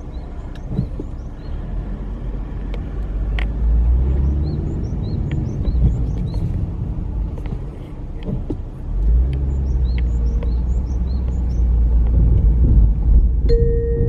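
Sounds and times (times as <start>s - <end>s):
train rumbling: 3.8s - 14.0s
crossing bell ringing: 13.5s - 14.0s
steady tone: 13.5s - 14.0s.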